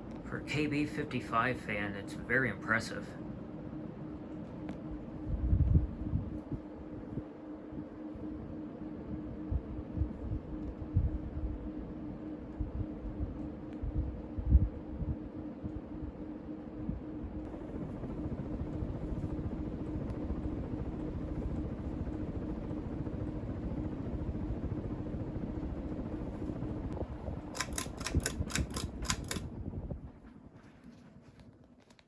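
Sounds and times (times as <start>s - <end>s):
fan blades rushing: 0.0s - 31.5s
ceiling fan motor hum: 0.0s - 32.0s
sharp clicks: 27.6s - 29.5s.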